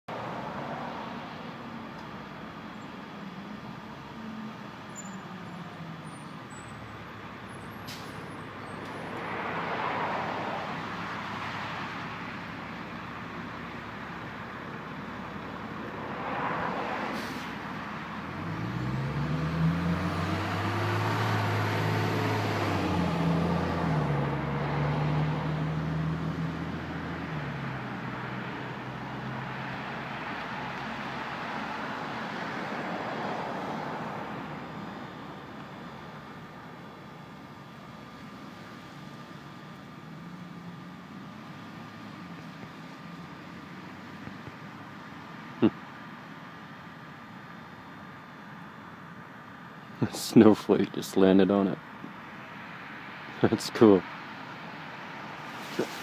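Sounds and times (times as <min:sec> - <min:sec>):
vehicles swishing by: 0:00.1 - 0:56.0.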